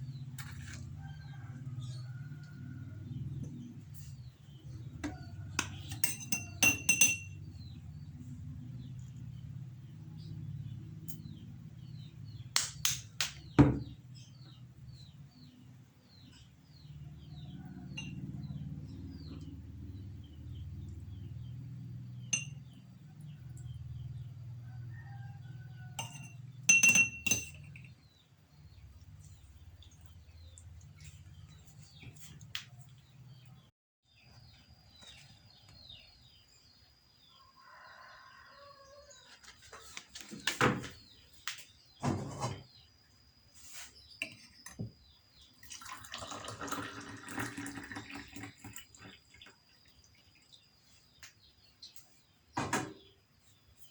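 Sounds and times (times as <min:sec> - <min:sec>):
small birds chirping: 0:00.0 - 0:26.6, 0:27.4 - 0:42.0, 0:47.6 - 0:53.9
kitchenware clinking: 0:05.0 - 0:07.6, 0:22.3 - 0:22.8, 0:26.0 - 0:28.0.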